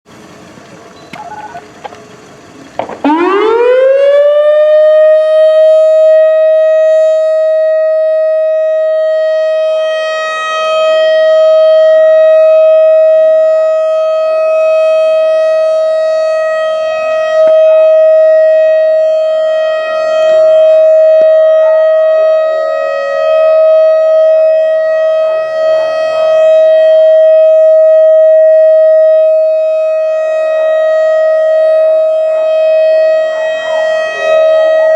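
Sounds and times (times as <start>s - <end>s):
warning siren winding up: 0.9s - 2.0s, 2.8s - 34.9s.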